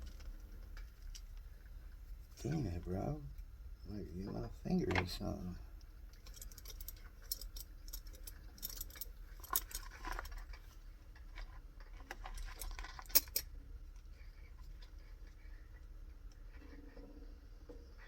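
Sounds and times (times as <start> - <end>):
metal parts clicking and clinking: 6.1 - 10.6, 12.0 - 13.5.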